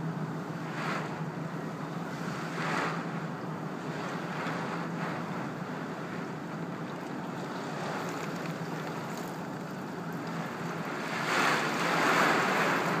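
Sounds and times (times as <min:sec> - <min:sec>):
rain: 0:03.8 - 0:13.0.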